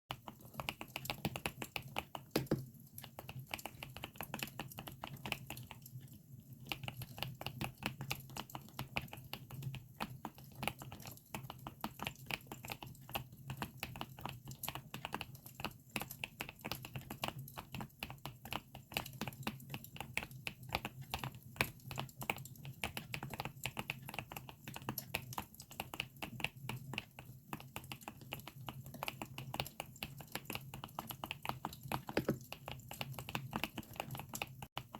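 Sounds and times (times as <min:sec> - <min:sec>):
mechanical keyboard typing: 0:00.6 - 0:02.7, 0:31.8 - 0:32.5.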